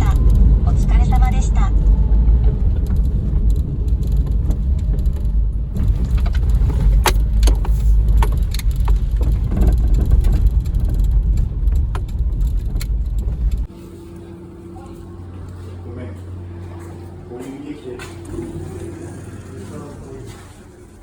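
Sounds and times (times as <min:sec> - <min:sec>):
engine and road rumble: 0:00.0 - 0:21.0
sharp clicks and knocks: 0:02.3 - 0:13.7.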